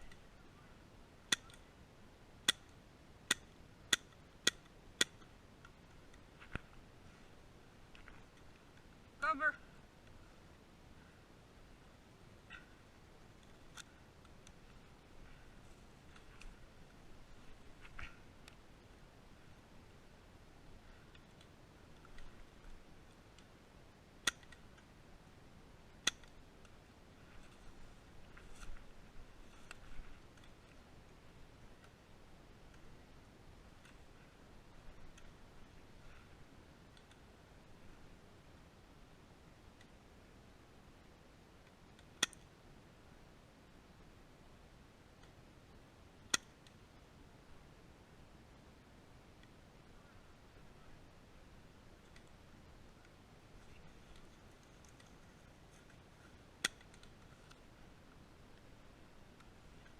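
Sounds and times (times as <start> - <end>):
faint ticks: 51.9 - 58.7.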